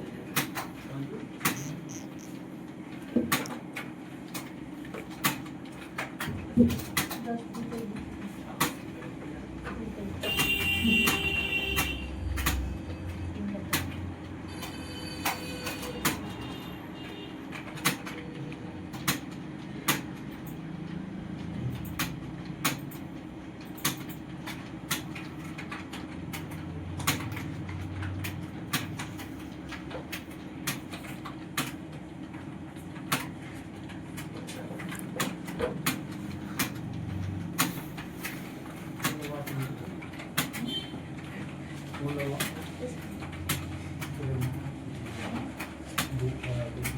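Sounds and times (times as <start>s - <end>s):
keyboard typing clicks: 1.4s - 2.4s, 10.2s - 23.1s.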